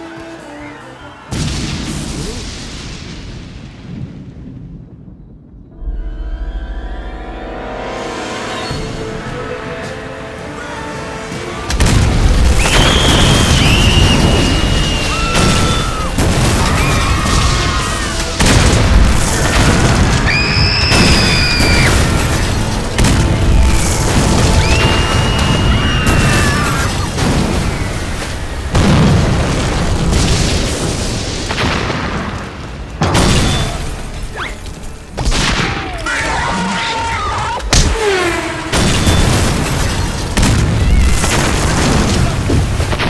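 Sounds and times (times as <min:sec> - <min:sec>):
background music: 0:00.0 - 0:02.0, 0:05.7 - 0:29.9
booms and crashes: 0:01.3 - 0:10.5, 0:11.3 - 0:36.5, 0:37.6 - 0:43.0
loud rumbling wash: 0:04.6 - 0:32.7
high whistling screeches: 0:23.6 - 0:27.1.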